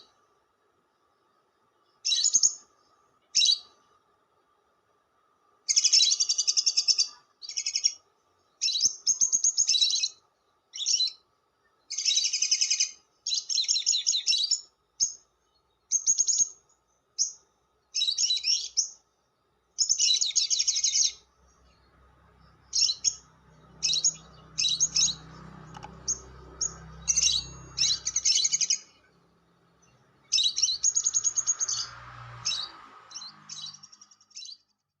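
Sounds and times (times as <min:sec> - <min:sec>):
lovebird shrill chattering: 0:19.8 - 0:21.2, 0:22.7 - 0:29.0, 0:30.3 - 0:34.6.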